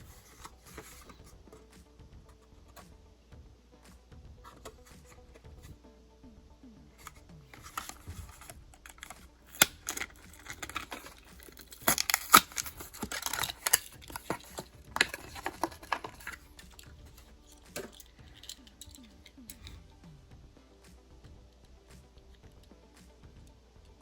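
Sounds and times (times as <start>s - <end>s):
packaging crinkling and clicking: 7.0s - 17.2s.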